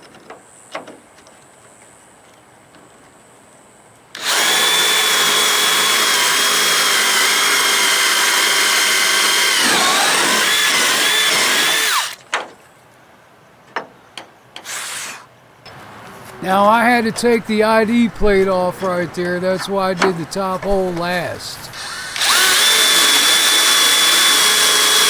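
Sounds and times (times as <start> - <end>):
electric drill whining: 4.2 - 12.2, 21.7 - 25.0.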